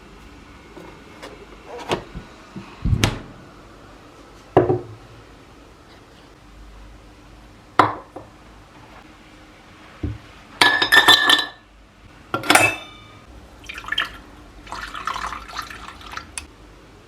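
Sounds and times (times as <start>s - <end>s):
glassware and dishes clinking: 10.6s - 11.6s, 12.4s - 13.2s.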